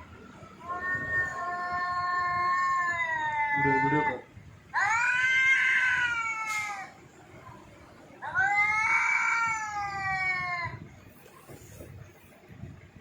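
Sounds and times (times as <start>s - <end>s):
cat meowing: 0.6s - 7.0s, 8.2s - 10.8s.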